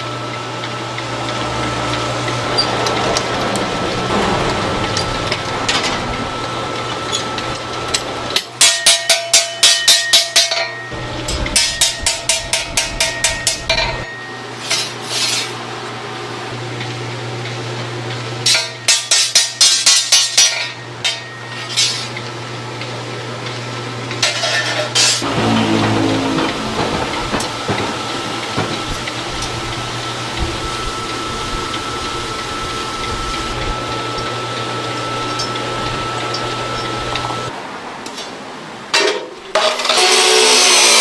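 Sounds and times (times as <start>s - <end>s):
low machine hum: 0.0s - 8.4s, 10.9s - 14.6s, 25.2s - 37.5s
metal being struck: 25.2s - 29.1s.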